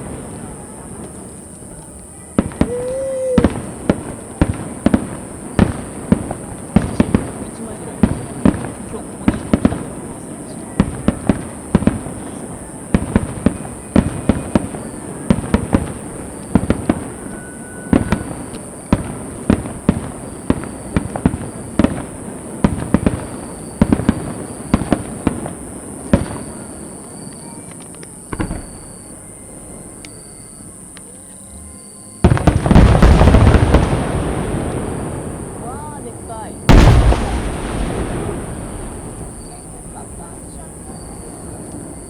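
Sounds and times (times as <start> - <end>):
fireworks bursting: 0.0 - 42.0
loud blast with long rumble: 32.2 - 40.6.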